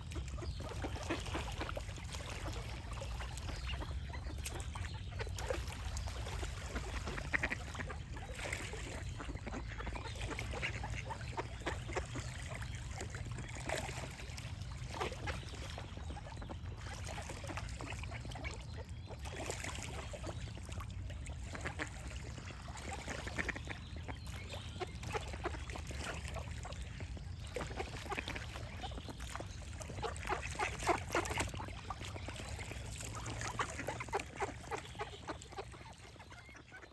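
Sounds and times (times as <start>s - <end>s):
ducks quacking: 3.4s - 12.6s, 21.5s - 26.3s, 29.8s - 36.9s.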